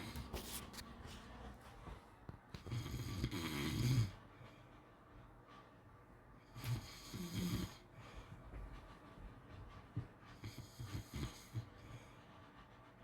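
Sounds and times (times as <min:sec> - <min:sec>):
dog snoring: 0:02.6 - 0:04.2, 0:06.5 - 0:07.8, 0:10.4 - 0:11.7.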